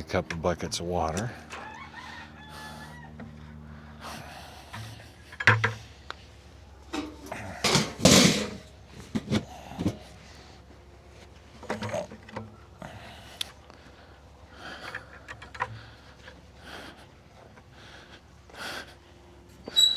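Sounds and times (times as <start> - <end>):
low steady hum: 0.0 - 19.6
knocks and clanks of farm gear: 4.7 - 6.0, 6.8 - 10.2, 11.5 - 12.6, 14.8 - 16.5
clattering rattle: 6.9 - 9.4.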